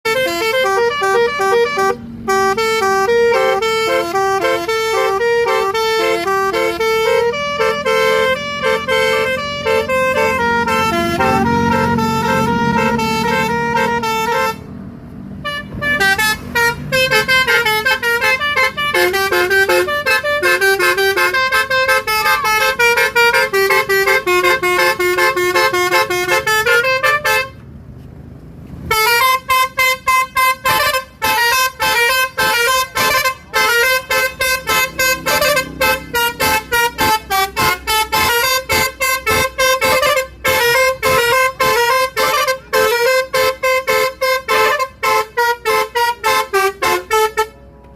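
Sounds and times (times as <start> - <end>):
musical car horn playing a tune: 0.0 - 27.6, 28.8 - 47.9.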